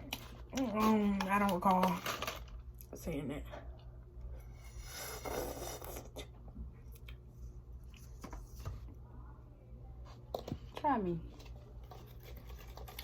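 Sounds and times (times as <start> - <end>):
food packaging rustling: 0.0 - 2.7, 11.3 - 13.0.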